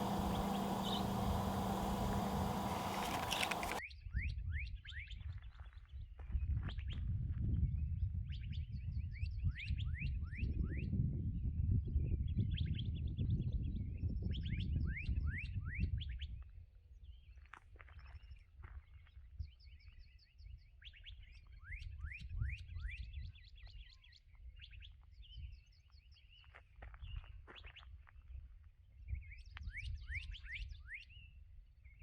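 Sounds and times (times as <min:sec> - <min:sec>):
wild birds chirping: 0:00.0 - 0:03.8.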